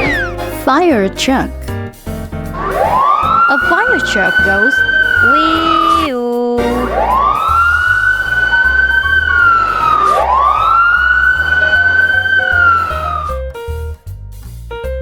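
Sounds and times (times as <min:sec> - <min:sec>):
children's background music: 0:00.0 - 0:13.8
fire truck siren wailing: 0:02.7 - 0:13.4.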